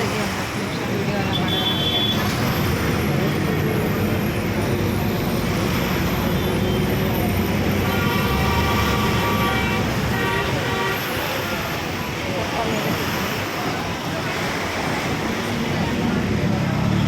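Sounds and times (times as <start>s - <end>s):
road traffic noise: 0.0s - 17.0s
vehicle horn: 7.8s - 11.3s.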